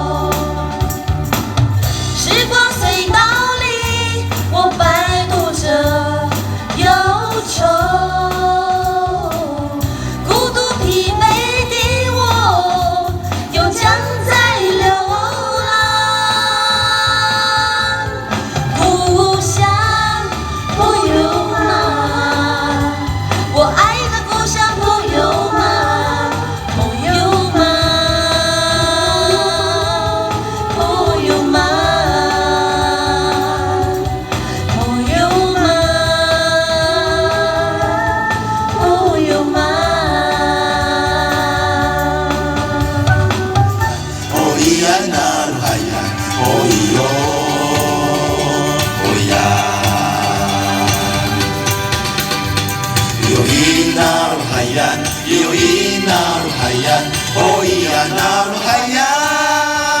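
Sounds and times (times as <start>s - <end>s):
steady musical accompaniment: 0.0s - 60.0s
voices singing long wavering notes: 20.1s - 60.0s.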